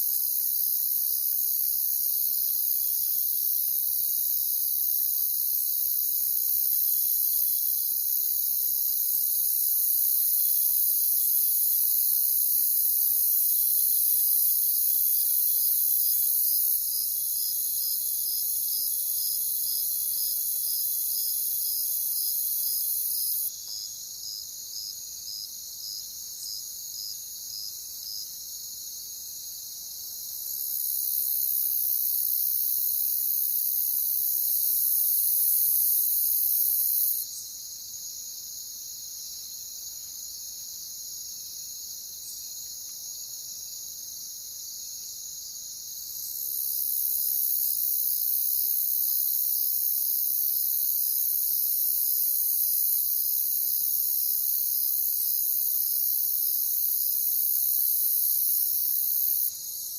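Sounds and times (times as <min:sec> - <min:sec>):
crickets trilling: 0:00.0 - 0:28.2, 0:46.2 - 0:59.9
high loud insect trill: 0:00.0 - 0:38.2, 0:40.8 - 0:59.9.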